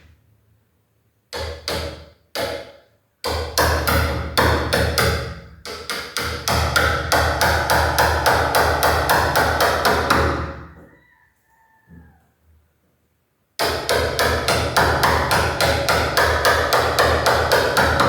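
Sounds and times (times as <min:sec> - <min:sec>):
hammer tapping on cutting tool: 0:01.4 - 0:02.7, 0:13.6 - 0:18.0.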